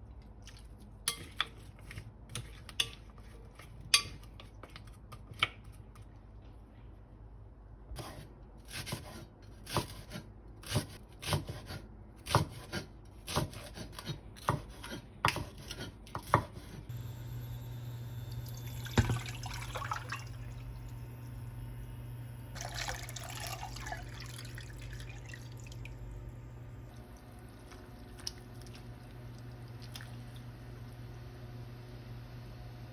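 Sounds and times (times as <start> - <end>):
knife chopping on cutting board: 8.0 - 16.8
steady low hum: 16.9 - 32.9.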